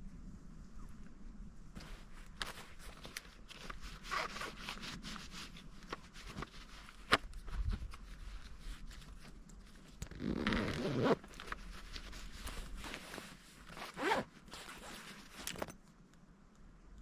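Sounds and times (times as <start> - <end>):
handling clicks and rustling: 1.8 - 16.2
zipper pulled open: 3.9 - 5.0, 10.0 - 15.7.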